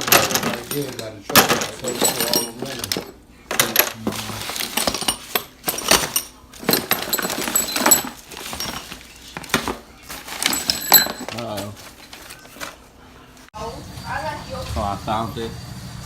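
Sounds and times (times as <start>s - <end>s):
metallic clinks and clatter: 0.0s - 12.4s.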